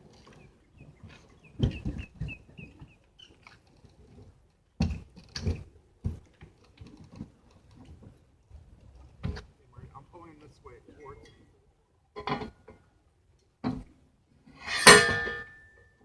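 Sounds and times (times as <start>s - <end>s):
small bird chirping: 0.4s - 3.4s
heavy clunks of dock sections: 13.6s - 14.0s.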